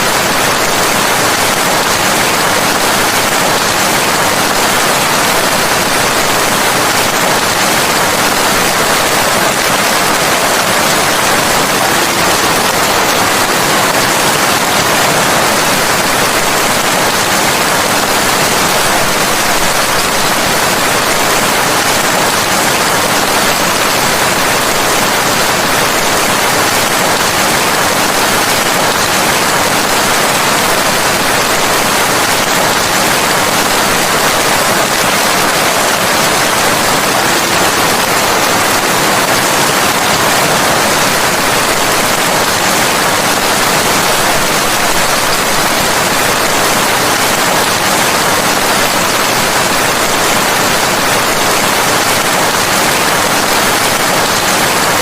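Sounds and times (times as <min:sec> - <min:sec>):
steady rain: 0:00.0 - 0:55.0.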